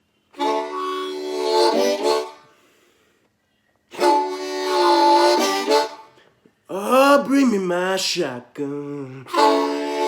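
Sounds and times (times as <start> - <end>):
blues harmonica playing chords: 0.3 - 3.0, 3.9 - 6.5, 9.2 - 10.0.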